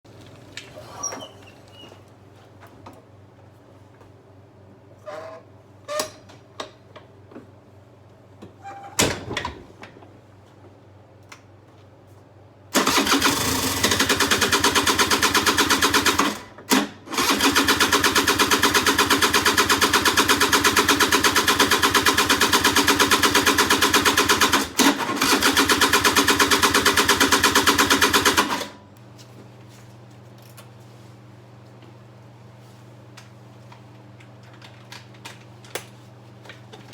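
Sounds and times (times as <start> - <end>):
scooter engine cranking on starter: 12.7 - 28.8.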